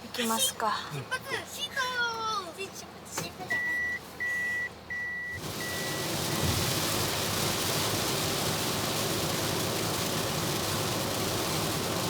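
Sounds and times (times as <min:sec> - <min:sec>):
vehicle driving in rain: 0:05.3 - 0:12.0.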